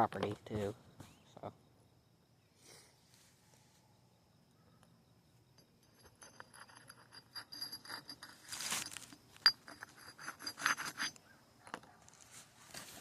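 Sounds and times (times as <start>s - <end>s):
axe blade scraping concrete: 6.1s - 11.2s.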